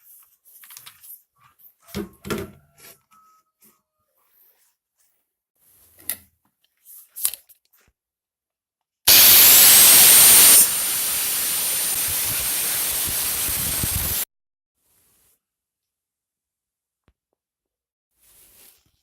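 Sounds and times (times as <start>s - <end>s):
belt sander motor running: 9.1s - 14.2s.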